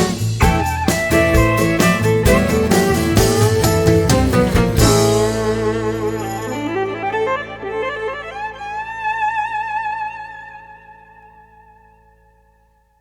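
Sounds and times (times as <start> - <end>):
country song: 0.0 - 10.0.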